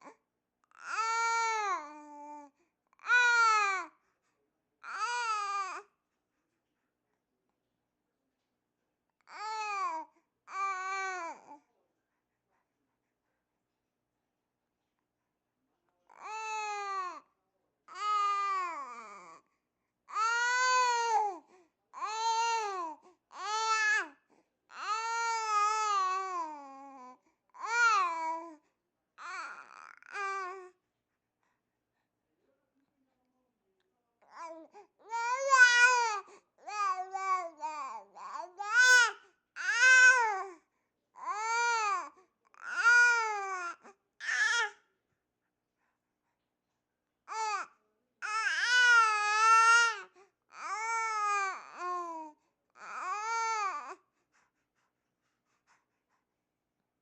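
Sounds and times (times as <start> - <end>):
baby babbling: 24.8 - 28.5, 29.2 - 30.7, 34.3 - 40.5, 41.2 - 44.7, 47.3 - 54.0.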